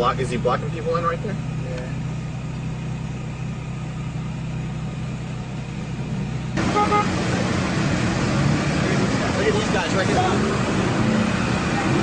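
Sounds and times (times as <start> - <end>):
car engine idling: 0.0 - 12.0
car horn toots: 6.6 - 7.2.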